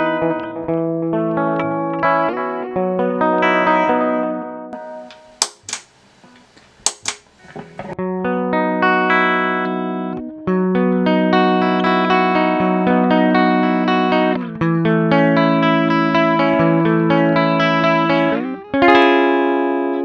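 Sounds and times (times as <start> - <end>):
distorted electric guitar chords: 0.0 - 6.6, 7.3 - 20.0
muted electric guitar strums: 4.8 - 8.0.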